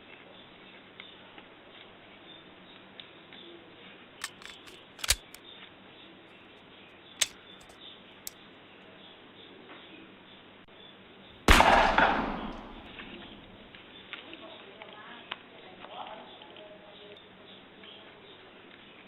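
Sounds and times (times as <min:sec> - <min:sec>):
sharp clicks: 0:04.2 - 0:05.4, 0:11.5 - 0:13.7
loud gunshot bang: 0:11.5 - 0:13.6.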